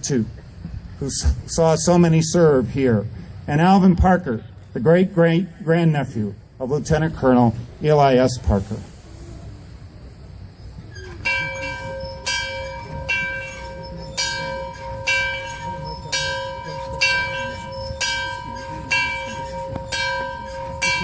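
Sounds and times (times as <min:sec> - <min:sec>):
large bell ringing: 0:11.2 - 0:21.0.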